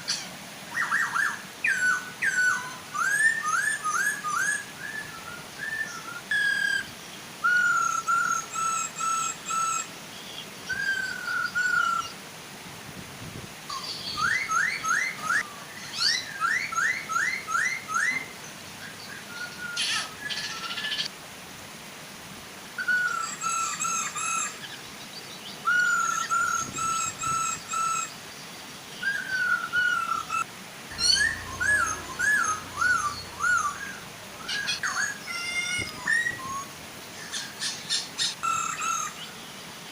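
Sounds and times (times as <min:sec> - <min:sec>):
birds whistling calls: 0:00.0 - 0:12.2, 0:13.7 - 0:21.1, 0:22.8 - 0:28.2, 0:28.9 - 0:39.6
waterfall rushing: 0:29.0 - 0:38.4.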